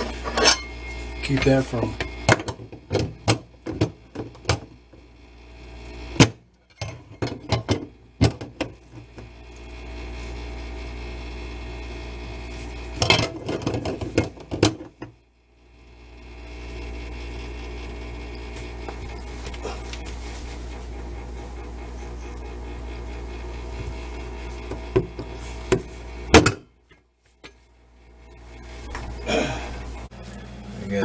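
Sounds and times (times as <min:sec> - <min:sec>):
tools clinking against metal sink: 0:00.0 - 0:03.8, 0:06.7 - 0:07.9.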